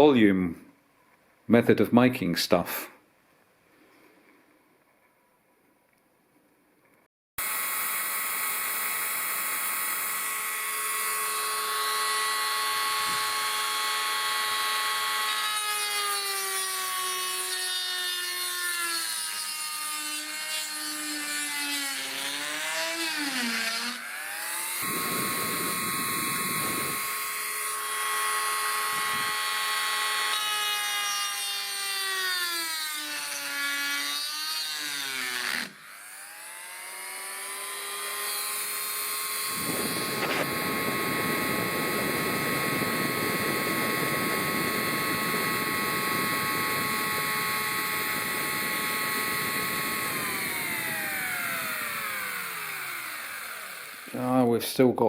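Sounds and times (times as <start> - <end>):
high-speed power tool whining: 7.4 - 54.6
rough grinding: 39.5 - 54.6.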